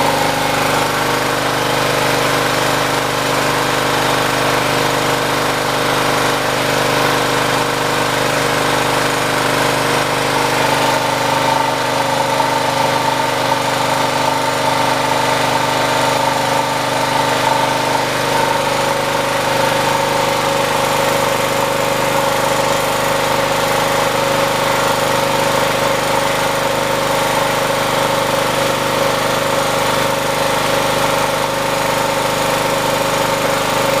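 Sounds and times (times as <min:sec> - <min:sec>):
generator engine running: 0:00.0 - 0:34.0.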